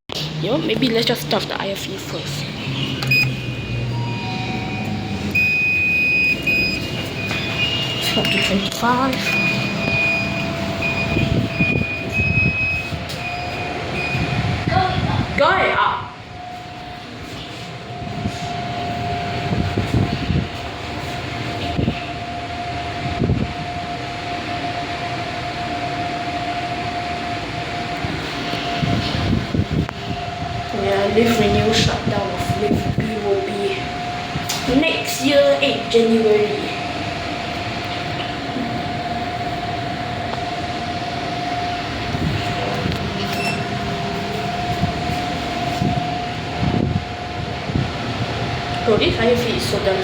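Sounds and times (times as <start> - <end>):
lift hum and whine: 0.1 - 50.0
short high beep: 43.2 - 43.8.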